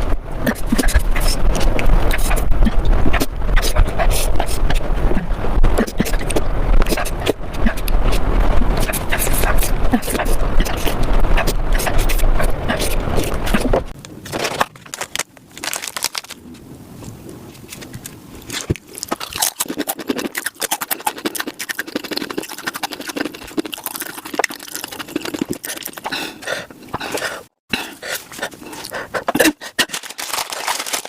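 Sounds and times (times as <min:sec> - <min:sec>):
crunching and chewing: 0:08.8 - 0:31.0.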